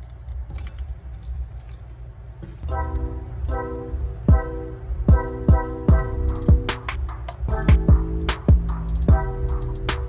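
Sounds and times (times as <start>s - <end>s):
electronic music with kick drum: 4.2s - 10.0s.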